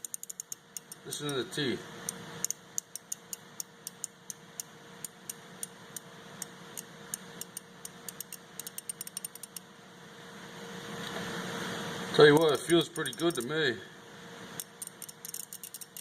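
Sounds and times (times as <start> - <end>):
ratchet clicking: 0.0 - 1.4, 2.1 - 5.8, 6.4 - 9.6, 12.5 - 13.5, 14.6 - 16.0.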